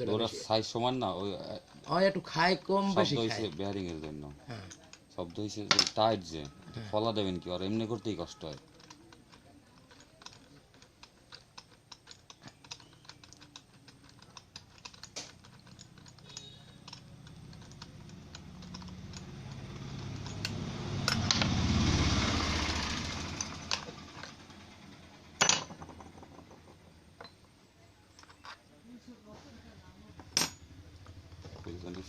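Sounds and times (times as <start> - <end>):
light metal clicks and taps: 8.4 - 21.5.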